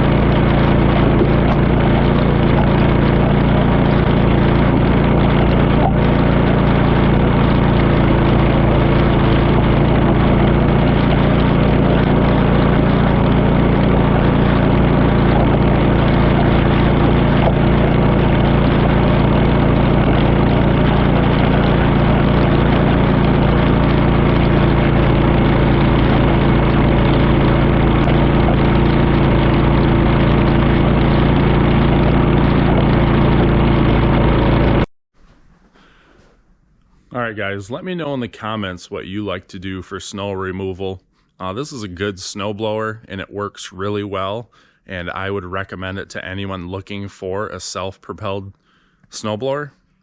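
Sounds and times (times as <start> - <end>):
snowblower engine running: 0.0 - 34.9.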